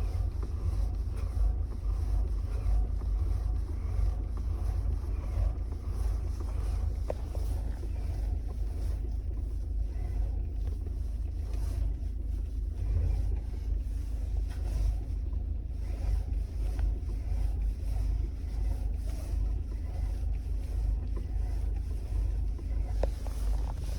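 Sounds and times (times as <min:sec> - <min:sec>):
power steering knocking: 0:00.0 - 0:09.4, 0:20.9 - 0:23.9
car low rumble: 0:00.0 - 0:23.9.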